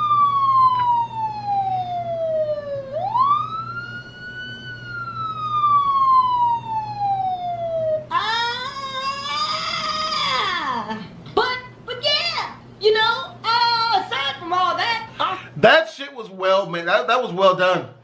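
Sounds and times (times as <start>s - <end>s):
police siren wailing: 0.0s - 10.4s.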